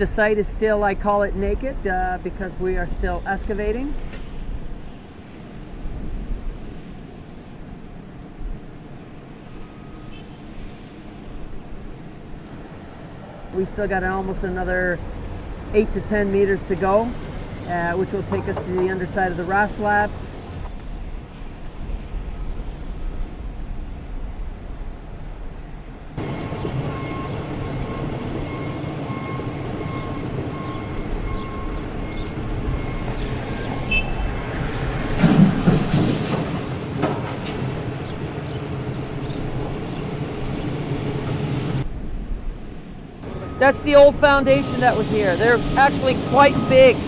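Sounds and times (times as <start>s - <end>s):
heavy diesel machinery rumbling: 12.4s - 42.0s, 43.2s - 47.0s
repeating beep: 43.4s - 47.0s.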